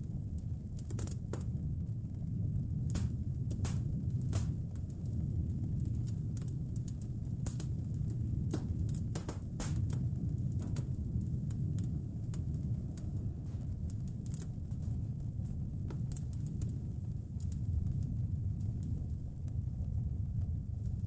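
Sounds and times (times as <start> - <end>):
low rumble of wind: 0.0 - 21.0
wood fire crackling: 0.0 - 21.0.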